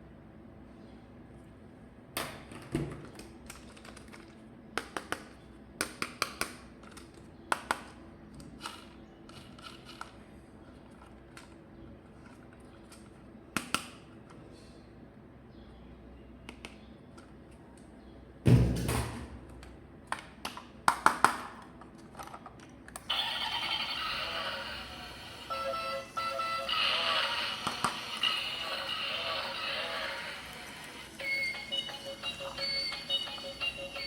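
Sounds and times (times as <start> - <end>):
plastic toy parts clicking: 5.8 - 11.6, 20.1 - 23.1.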